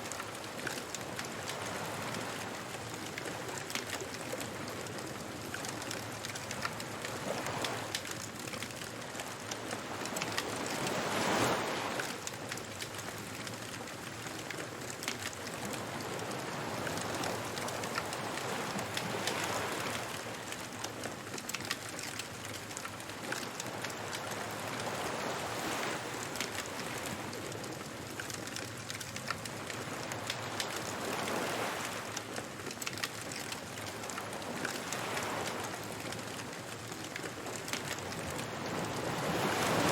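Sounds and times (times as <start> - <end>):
waves washing in: 0.0 - 39.9.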